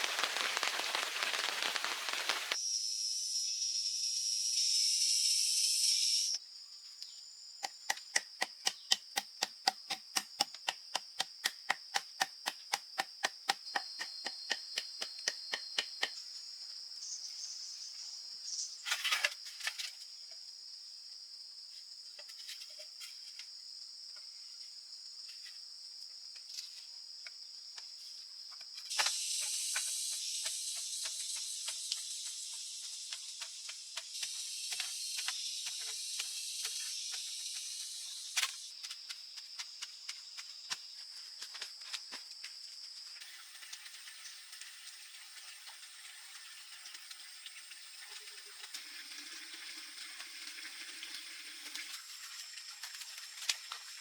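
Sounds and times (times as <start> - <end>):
broad hiss: 0.0 - 2.6, 28.9 - 38.7
insects droning: 0.0 - 54.0.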